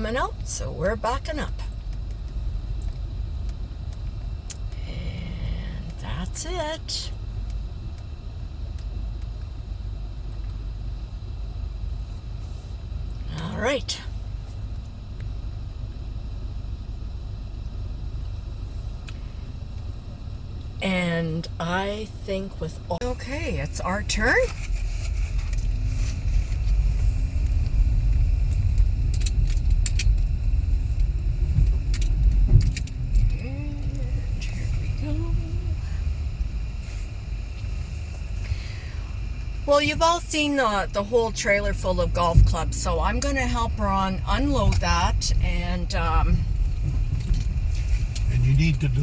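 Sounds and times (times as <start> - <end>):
vehicle engine rumbling: 0.0 - 49.0
sharp clicks and rattles: 23.0 - 36.4, 42.0 - 49.0.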